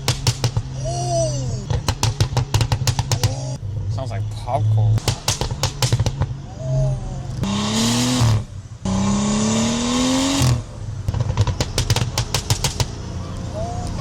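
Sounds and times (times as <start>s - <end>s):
exhaust pops and crackles: 0.0s - 1.0s, 1.7s - 3.6s, 5.0s - 6.4s, 10.4s - 13.1s
car engine accelerating hard: 6.2s - 11.5s.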